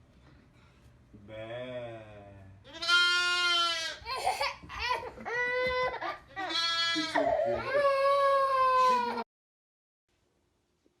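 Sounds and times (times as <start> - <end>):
goat bleating: 2.7 - 4.0, 6.4 - 7.7.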